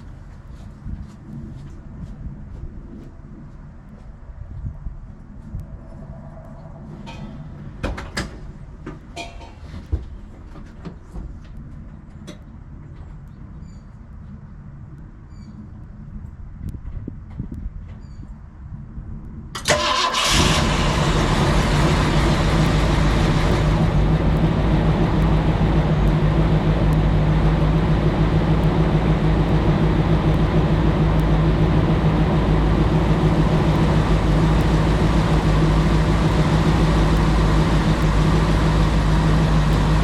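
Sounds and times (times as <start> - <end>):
car engine cranking and starting: 19.6 - 40.0
car engine idling: 19.7 - 40.0.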